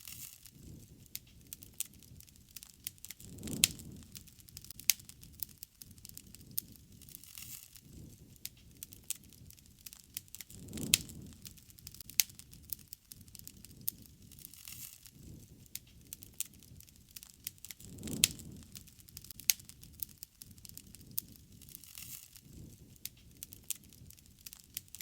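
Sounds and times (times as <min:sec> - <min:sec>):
fire crackling and popping: 0:00.0 - 0:25.0
low rush of flame: 0:00.0 - 0:25.0.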